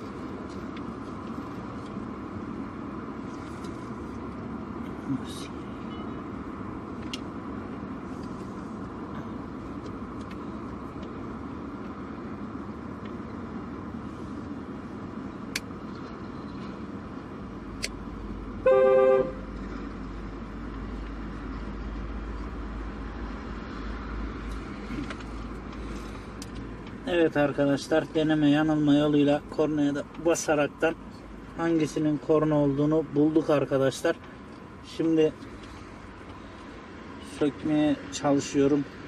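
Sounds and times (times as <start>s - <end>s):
car horn blast: 18.6s - 19.4s.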